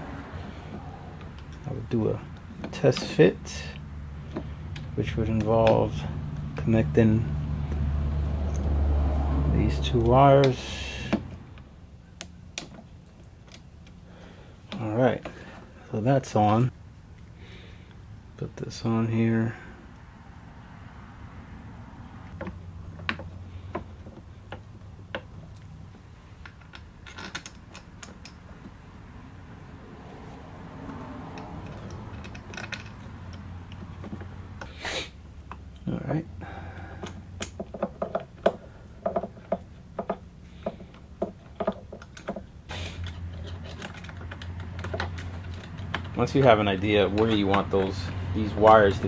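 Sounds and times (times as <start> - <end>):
small parts clicking and tapping: 26.4 - 28.7, 30.9 - 34.7, 36.8 - 49.0.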